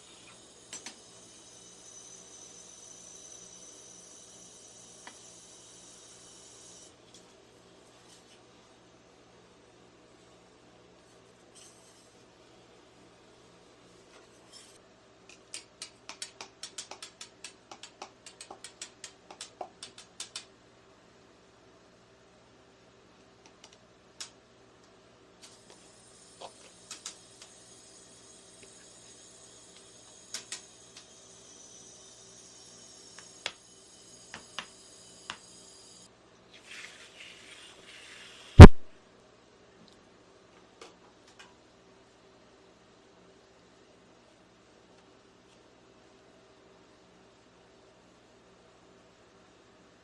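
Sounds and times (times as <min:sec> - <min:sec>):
faint high whine: 0:00.0 - 0:14.8, 0:25.4 - 0:38.9
loud sharp knock: 0:38.6 - 0:38.9.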